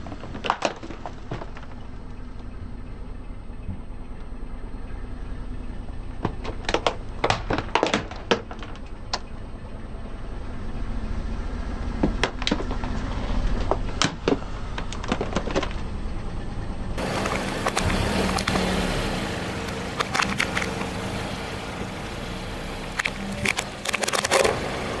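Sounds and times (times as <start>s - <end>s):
objects crushed under car tyre: 0.0s - 2.6s, 6.1s - 9.3s, 11.9s - 16.1s, 17.0s - 19.0s, 19.9s - 20.9s, 22.9s - 25.0s
low rumble of car engine: 0.0s - 25.0s.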